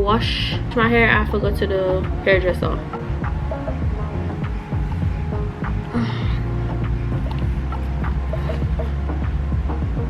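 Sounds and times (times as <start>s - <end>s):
music with heavy bass beat: 0.0s - 10.0s.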